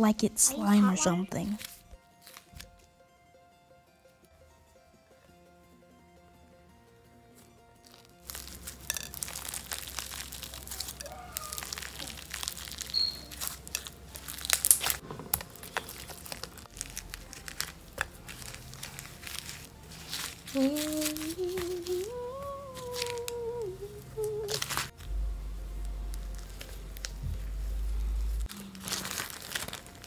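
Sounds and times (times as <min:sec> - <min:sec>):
slime crinkling and crunching: 0:01.5 - 0:02.8, 0:07.8 - 0:23.6, 0:24.2 - 0:25.0, 0:26.1 - 0:30.0.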